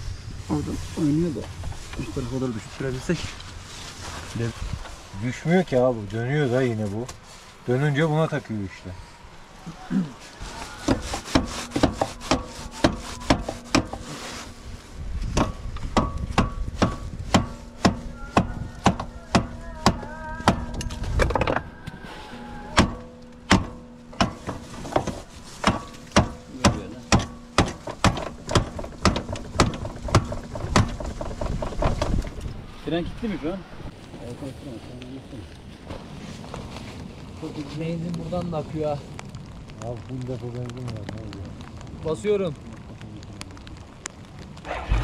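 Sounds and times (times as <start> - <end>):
hard knocks on metal shaft: 10.9 - 14.1, 15.3 - 20.8, 22.8 - 31.6.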